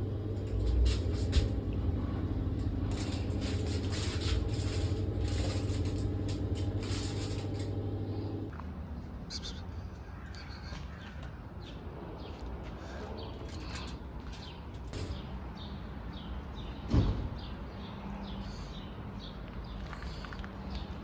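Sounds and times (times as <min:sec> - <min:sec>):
low steady hum: 0:00.0 - 0:09.0.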